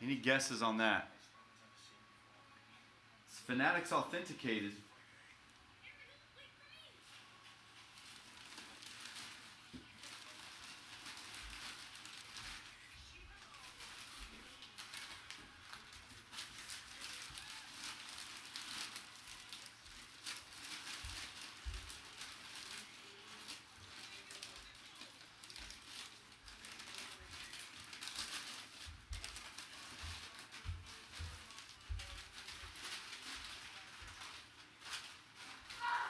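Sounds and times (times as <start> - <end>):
plastic packaging crinkling: 7.0 - 36.0.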